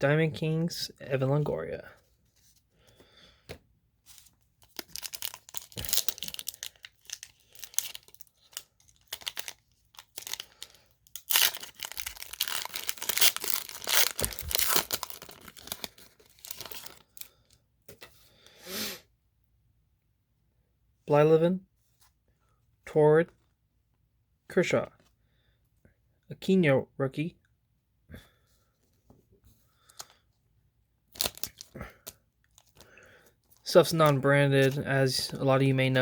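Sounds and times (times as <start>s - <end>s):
card pack wrapper tearing and crinkling: 4.1s - 17.3s, 31.1s - 32.9s, 33.6s - 35.5s.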